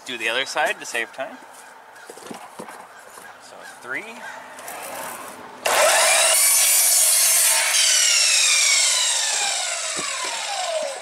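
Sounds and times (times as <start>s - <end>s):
miter saw whining: 5.6s - 11.0s
saw blade cutting wood: 5.6s - 11.0s.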